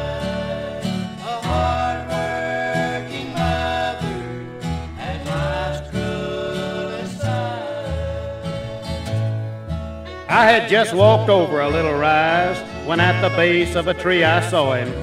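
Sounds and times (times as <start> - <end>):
bluegrass band playing: 0.0 - 15.0.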